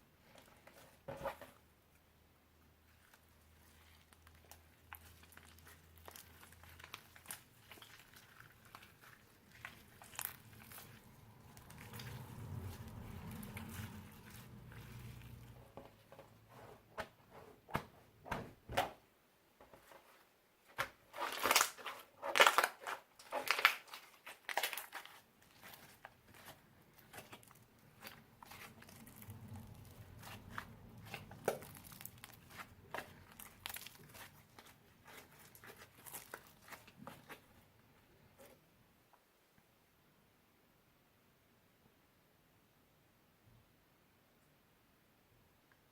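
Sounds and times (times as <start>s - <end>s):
slime crackling and squelching: 2.8s - 15.7s, 20.7s - 38.1s.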